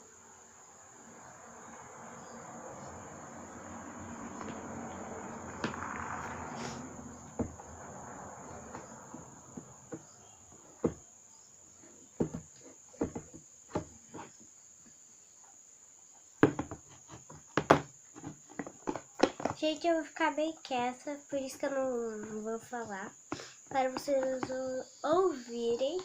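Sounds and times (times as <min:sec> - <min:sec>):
hiss: 0:06.5 - 0:06.9.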